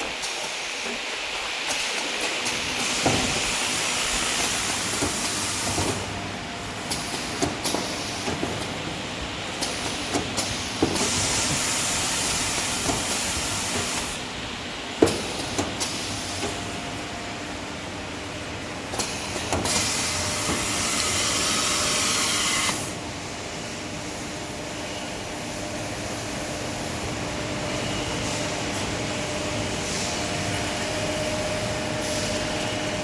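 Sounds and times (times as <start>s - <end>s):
band saw machine hissing: 31.0s - 33.0s.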